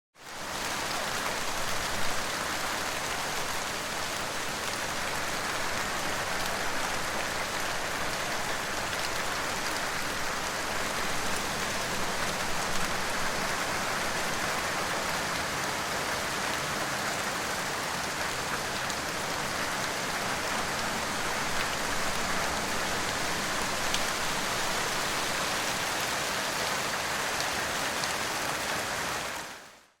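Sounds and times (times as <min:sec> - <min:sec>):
heavy rain falling: 0:00.2 - 0:29.9
raindrop ticks: 0:23.8 - 0:24.1.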